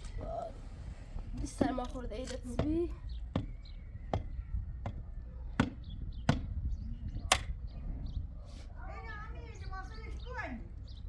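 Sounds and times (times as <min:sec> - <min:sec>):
sharp knocks: 0:02.6 - 0:05.0, 0:05.6 - 0:06.5.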